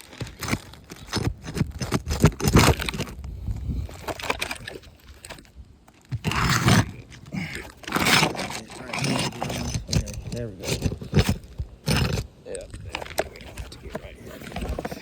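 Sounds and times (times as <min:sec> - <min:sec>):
shingle tearing loose: 0:00.0 - 0:03.2, 0:06.0 - 0:13.7.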